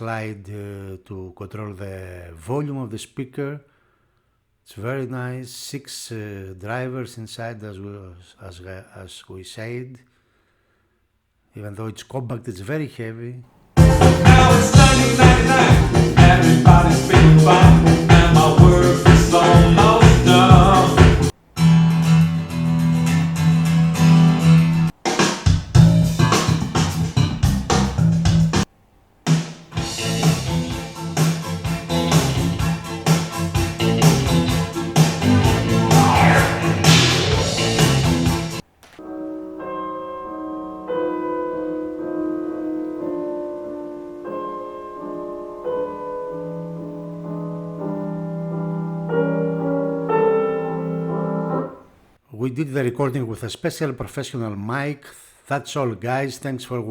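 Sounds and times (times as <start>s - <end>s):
guitar and bass music from speaker: 13.8s - 28.6s, 29.8s - 38.5s.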